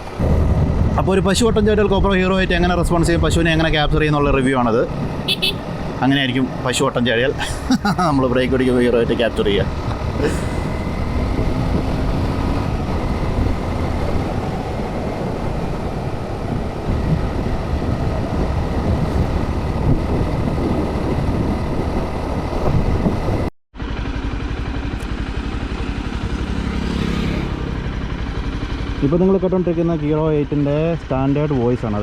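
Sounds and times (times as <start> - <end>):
wind rushing over microphone: 0.0 - 6.7, 9.2 - 23.5
motorcycle engine running: 4.9 - 6.0, 7.6 - 32.0.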